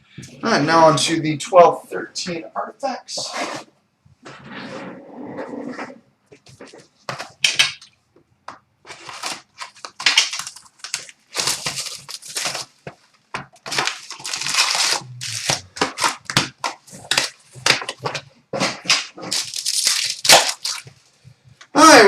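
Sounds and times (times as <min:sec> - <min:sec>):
plastic wrap crinkling: 0:08.8 - 0:21.2
cardboard box tearing: 0:13.7 - 0:16.2.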